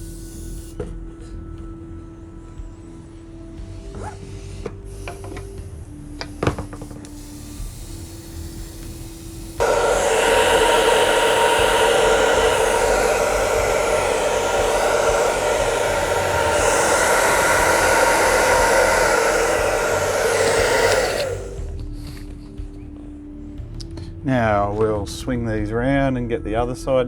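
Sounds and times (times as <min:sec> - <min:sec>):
air compressor motor whirring: 0:06.8 - 0:21.9.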